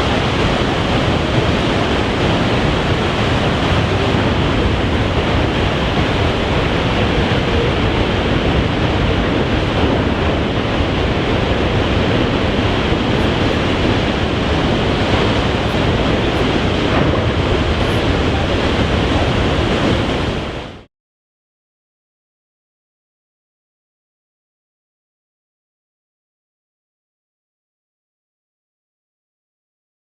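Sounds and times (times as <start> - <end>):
surf breaking and rushing: 0.0 - 20.9
wind buffeting microphone: 0.0 - 20.9.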